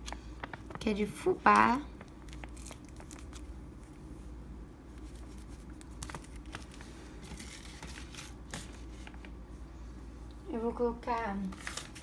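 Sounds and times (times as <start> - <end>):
low steady hum: 0.0 - 12.0
packaging rustling: 1.5 - 4.1, 4.9 - 9.2, 11.5 - 12.0.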